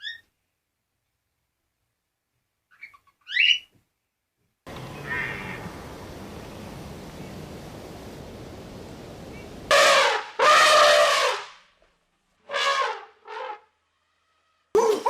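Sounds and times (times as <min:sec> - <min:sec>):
animal calling: 0:04.7 - 0:07.5
steady background hiss: 0:04.7 - 0:09.8.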